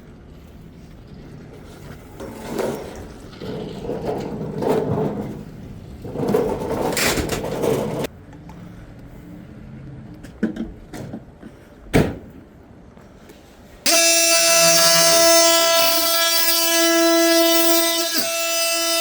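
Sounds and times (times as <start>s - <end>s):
scraping and rubbing noise: 1.5s - 8.1s.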